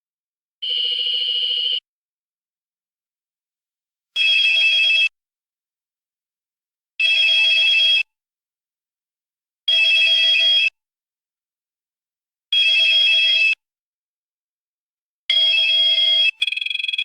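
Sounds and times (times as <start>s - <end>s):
mobile phone ringtone: 0.6s - 1.8s, 15.3s - 17.0s.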